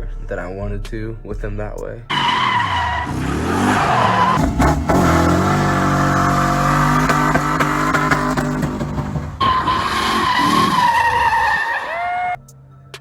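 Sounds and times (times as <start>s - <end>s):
car engine revving: 2.1s - 12.4s.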